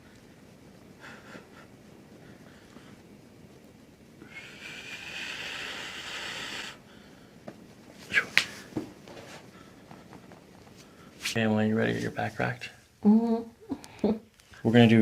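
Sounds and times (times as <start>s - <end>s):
person exhaling: 4.2s - 7.4s
spine cracking: 7.4s - 11.4s.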